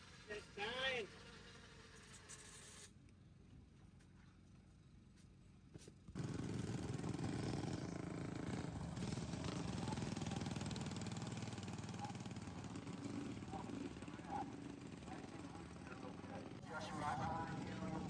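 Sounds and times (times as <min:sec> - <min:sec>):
lawn mower engines running hard: 0:06.2 - 0:18.0.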